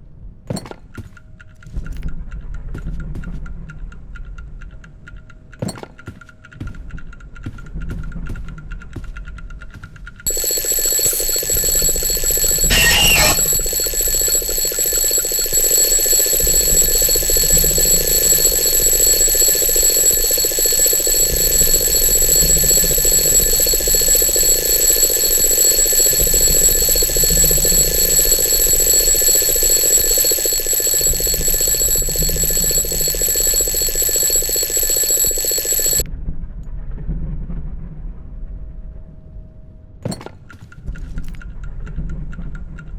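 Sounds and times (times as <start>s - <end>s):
alarm clock ringing: 10.3s - 36.0s.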